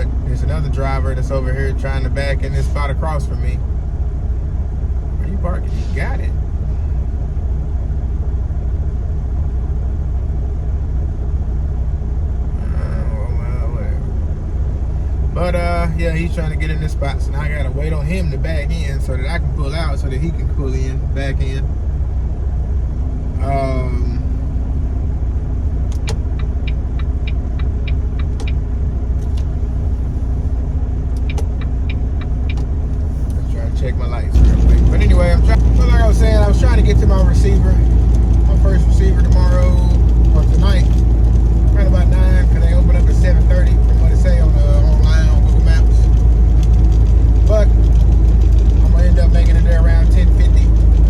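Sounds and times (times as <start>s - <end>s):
diesel truck engine idling: 0.0s - 51.0s.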